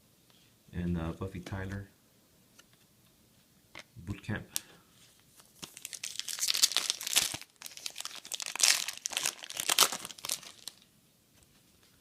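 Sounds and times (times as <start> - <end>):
card pack wrapper crinkling: 5.4 - 10.9.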